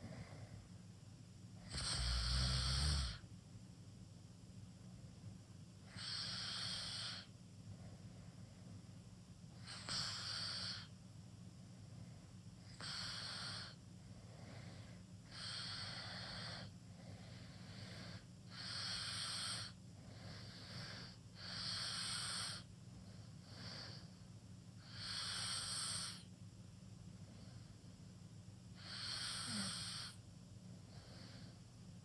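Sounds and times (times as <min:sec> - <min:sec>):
breathy wheezy snoring: 0:01.6 - 0:03.2, 0:05.8 - 0:07.3, 0:09.6 - 0:10.9, 0:12.6 - 0:24.1, 0:24.8 - 0:26.3, 0:28.8 - 0:30.2.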